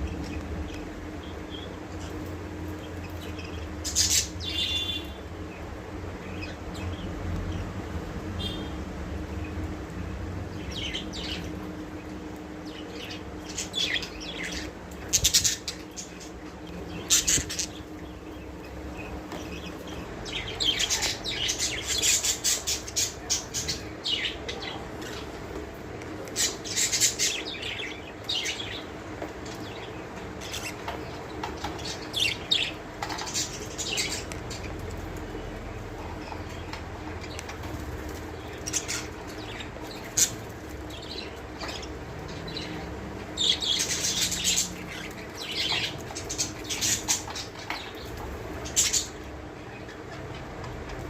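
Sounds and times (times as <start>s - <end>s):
budgerigars chirping: 38.4s - 50.5s.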